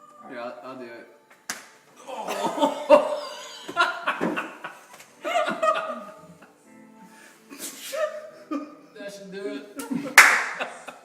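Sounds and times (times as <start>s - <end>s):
laughter: 2.1s - 6.5s, 7.6s - 8.8s, 9.8s - 11.0s.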